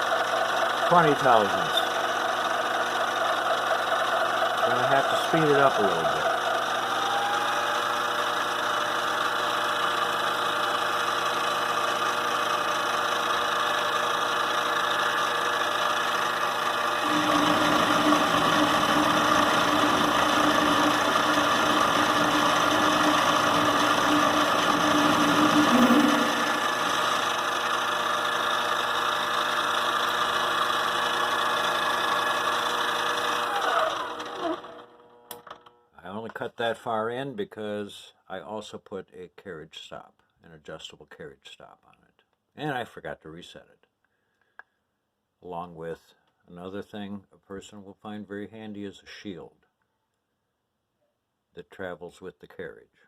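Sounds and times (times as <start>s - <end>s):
metal lathe whining: 0.0s - 35.0s
lathe cutting tool turning workpiece: 0.0s - 35.4s.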